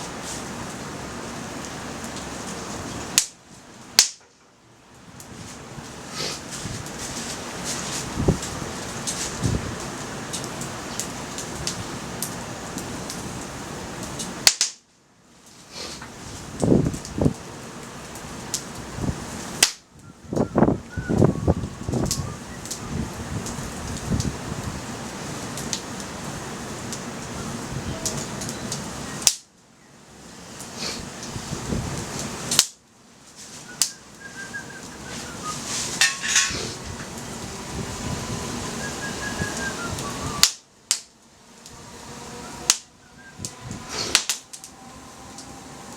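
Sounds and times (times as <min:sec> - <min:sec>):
wood fire crackling: 0:00.0 - 0:45.9
loud crack: 0:04.0 - 0:04.5, 0:14.2 - 0:14.8, 0:40.4 - 0:41.1, 0:42.7 - 0:42.9, 0:44.0 - 0:44.7
thin whistling tone: 0:20.0 - 0:23.0, 0:33.6 - 0:36.6, 0:38.5 - 0:40.7, 0:42.0 - 0:44.1.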